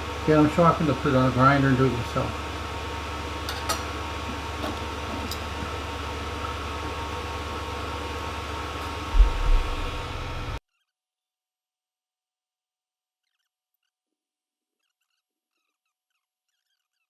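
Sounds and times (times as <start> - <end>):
mechanical fan hum: 0.0 - 10.6
low thump: 9.1 - 10.0.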